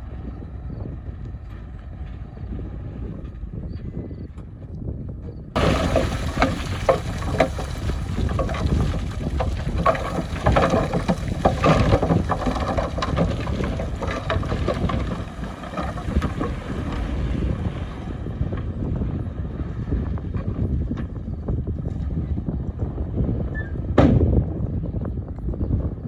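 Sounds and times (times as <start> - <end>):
heavy machinery engine rumble: 0.0 - 26.0
wind buffeting microphone: 0.0 - 26.0
machinery clanks and knocks: 5.6 - 17.7.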